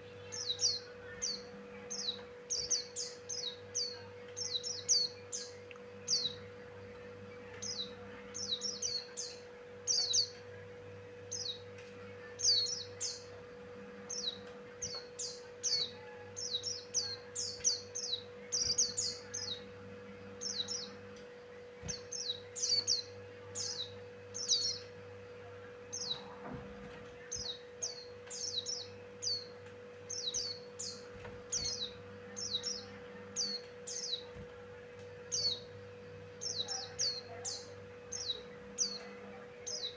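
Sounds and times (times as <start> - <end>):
bird singing high chirps: 0.0 - 10.4, 14.0 - 19.7, 27.2 - 34.4, 35.3 - 39.9
steady low hum: 0.0 - 39.9.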